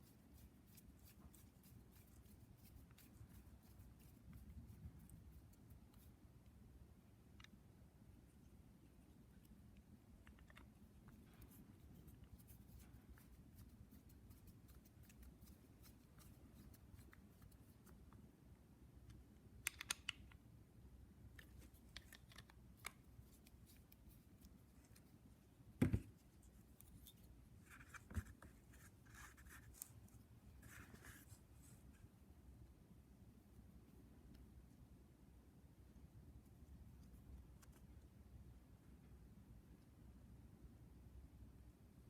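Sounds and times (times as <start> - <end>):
small parts clicking and scratching: 9.2 - 18.1, 19.1 - 20.4, 21.3 - 25.4.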